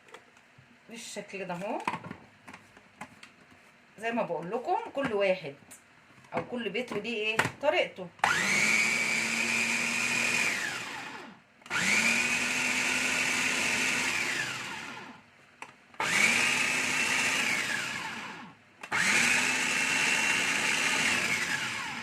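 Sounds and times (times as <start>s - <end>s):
electric food chopper whine: 8.2s - 15.2s, 16.0s - 22.0s.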